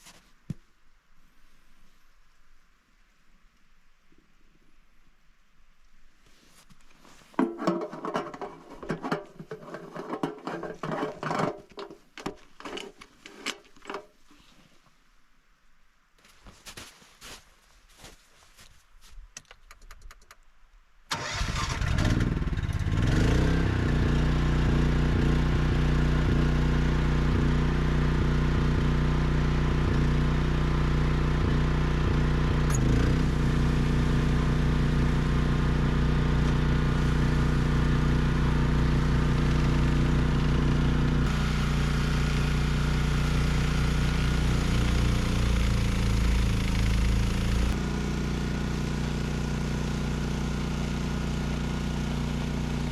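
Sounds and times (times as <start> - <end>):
snowblower engine running: 21.1 - 52.9.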